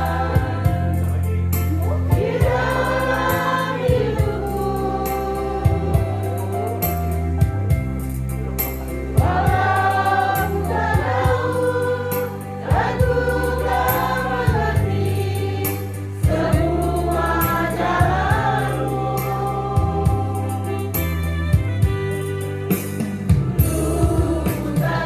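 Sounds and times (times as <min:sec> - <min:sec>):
congregation singing: 0:00.0 - 0:07.2, 0:09.0 - 0:21.4, 0:22.9 - 0:25.0
instrumental accompaniment with beat: 0:00.0 - 0:25.0.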